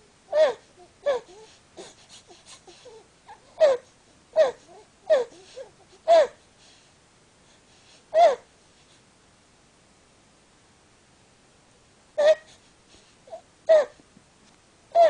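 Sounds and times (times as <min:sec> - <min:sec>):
infant honking breathing: 0:00.3 - 0:06.9, 0:12.2 - 0:14.0.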